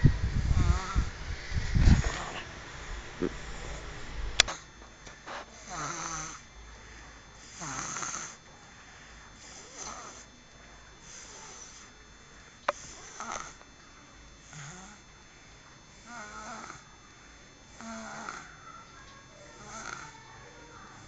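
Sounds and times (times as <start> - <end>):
person snoring: 0.5 - 1.1, 1.8 - 2.6, 5.5 - 6.4, 7.4 - 8.4, 9.4 - 10.3, 11.0 - 11.9, 12.7 - 13.6, 14.4 - 15.0, 16.0 - 16.8, 17.7 - 18.6, 19.6 - 20.2.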